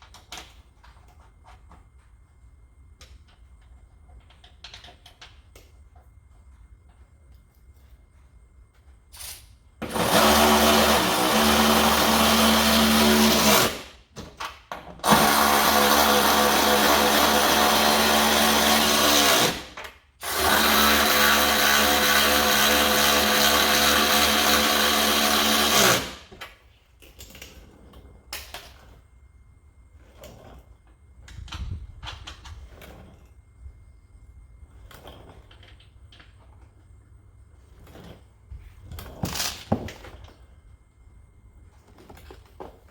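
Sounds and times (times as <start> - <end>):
power tool motor: 9.8 - 14.0, 15.0 - 26.4.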